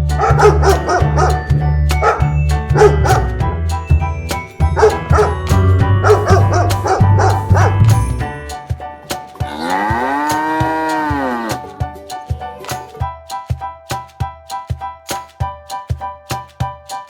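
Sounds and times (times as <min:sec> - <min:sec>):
background music: 0:00.0 - 0:17.0
dog barking: 0:00.2 - 0:01.4, 0:02.0 - 0:02.2, 0:02.8 - 0:03.3, 0:04.8 - 0:05.3, 0:06.0 - 0:07.8
cow mooing: 0:09.5 - 0:11.6.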